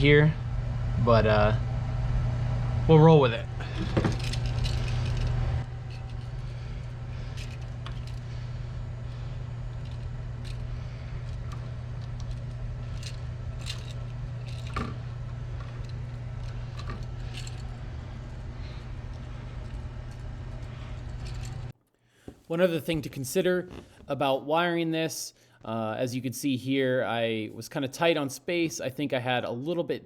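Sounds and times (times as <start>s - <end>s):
steady low hum: 0.0s - 21.7s.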